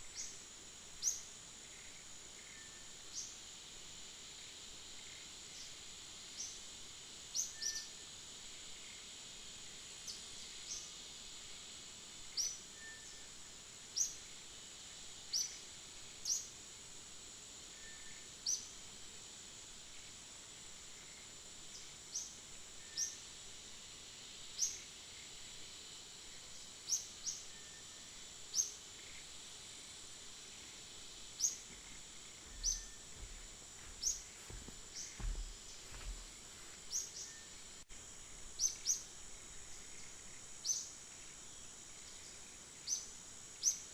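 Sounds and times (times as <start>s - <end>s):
high insect drone: 0.0s - 43.9s
faint low thumps: 31.6s - 36.5s
rising bird chirps: 32.5s - 33.1s.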